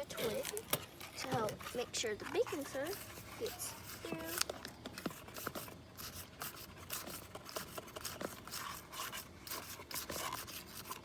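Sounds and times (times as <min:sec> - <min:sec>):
twig scraping in plastic funnel: 0:00.2 - 0:11.0.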